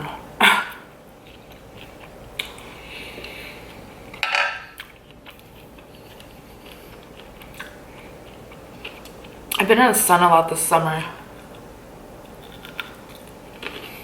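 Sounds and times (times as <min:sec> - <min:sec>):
chewing: 0:00.7 - 0:09.6, 0:11.3 - 0:14.0
crisp bite crunch: 0:12.2 - 0:14.0.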